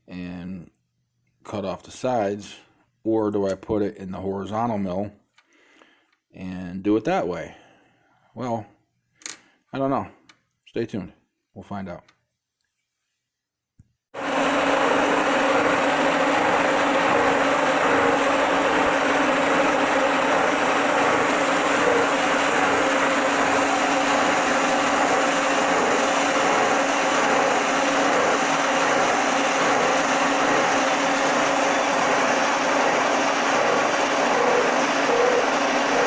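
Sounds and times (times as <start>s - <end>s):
machine tool running: 14.2s - 36.0s.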